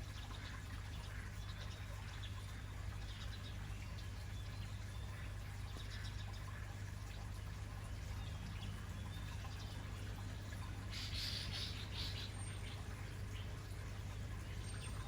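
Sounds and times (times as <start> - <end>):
small birds chirping: 10.9 - 13.6.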